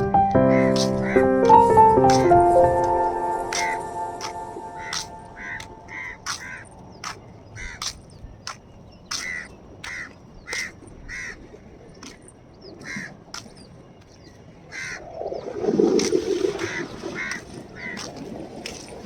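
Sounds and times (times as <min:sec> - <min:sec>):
crows cawing: 0:00.3 - 0:01.6, 0:03.5 - 0:06.7, 0:07.6 - 0:07.9, 0:09.1 - 0:11.4, 0:12.8 - 0:13.1, 0:14.7 - 0:15.0, 0:16.6 - 0:18.1.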